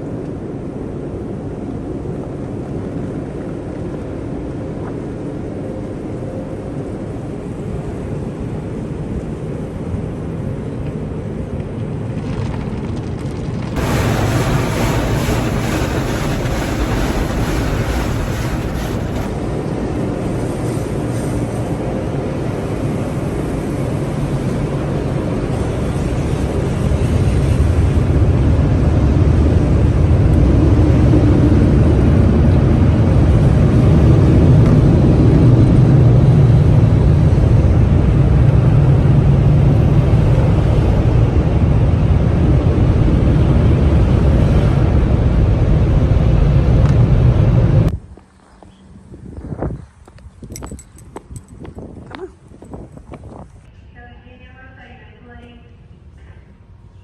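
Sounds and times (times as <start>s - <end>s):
moving car rumble: 12.3s - 19.4s.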